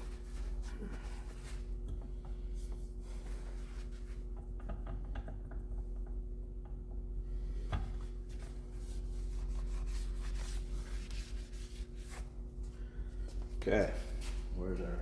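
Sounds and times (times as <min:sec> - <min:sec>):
electrical hum: 0:00.0 - 0:15.0
hands rubbing parts: 0:07.8 - 0:12.7.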